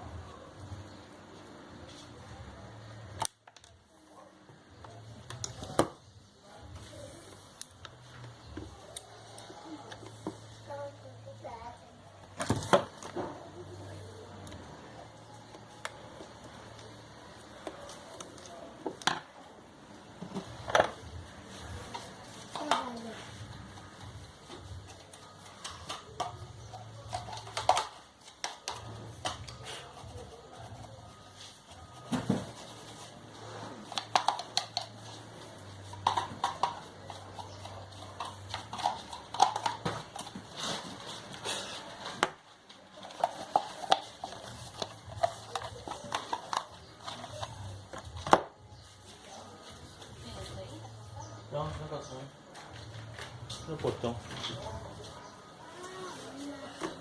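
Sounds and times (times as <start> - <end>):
fan parts and tools clicking: 33.8 - 42.0.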